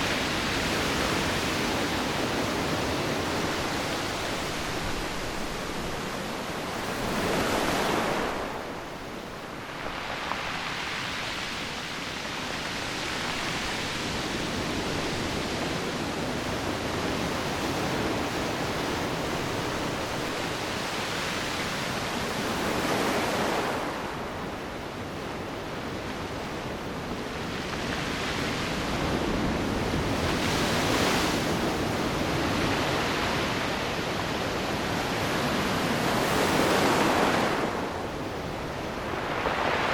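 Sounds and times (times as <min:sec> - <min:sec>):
waves breaking: 0:00.0 - 0:16.6, 0:27.5 - 0:39.9
sea surf washing on shore: 0:00.0 - 0:39.9.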